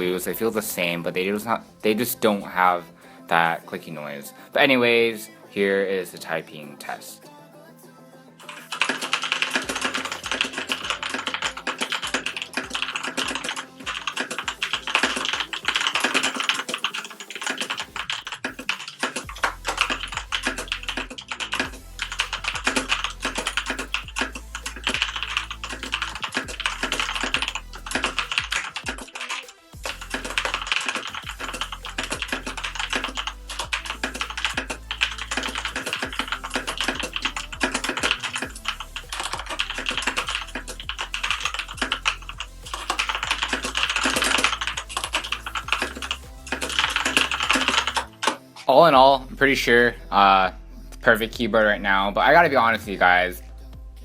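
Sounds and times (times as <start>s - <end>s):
electronic music: 0.0s - 54.0s
fast mechanical keyboard typing: 8.4s - 48.2s.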